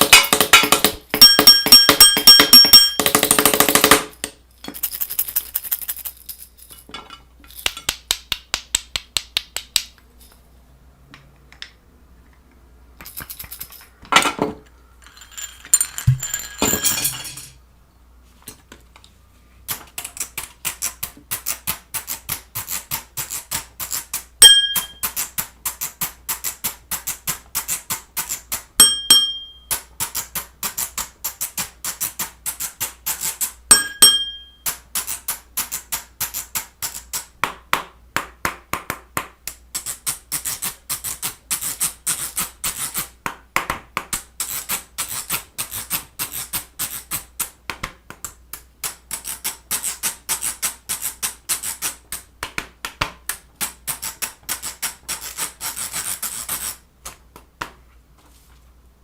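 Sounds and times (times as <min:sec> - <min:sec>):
short bell-like ding: 0:24.4 - 0:25.0, 0:28.8 - 0:29.7, 0:33.7 - 0:34.6.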